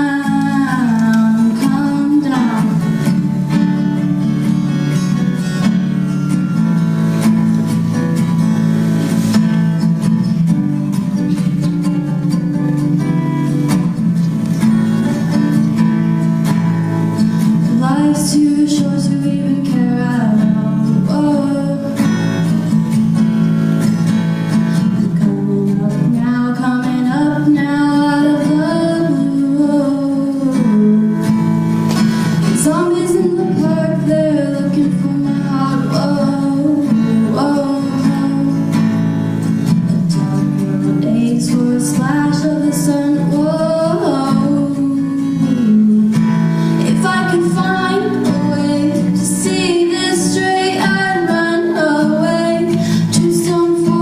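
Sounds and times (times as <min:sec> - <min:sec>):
woman singing: 0:00.0 - 0:05.2, 0:16.4 - 0:23.2, 0:24.8 - 0:54.0
strummed acoustic guitar: 0:00.0 - 0:54.0.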